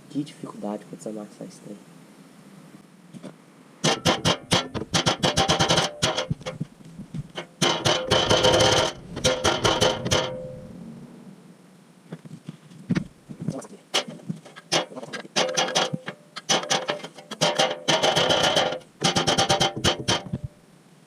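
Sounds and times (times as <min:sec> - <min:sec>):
hammer striking steel plate: 0:03.8 - 0:06.6, 0:07.3 - 0:10.7, 0:14.7 - 0:20.5.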